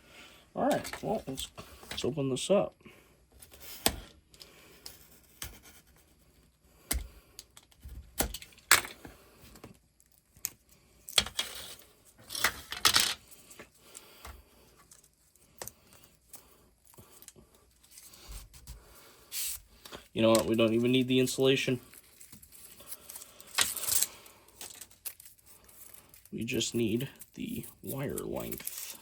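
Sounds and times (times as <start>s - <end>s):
cable being stripped by hand: 6.9s - 11.5s.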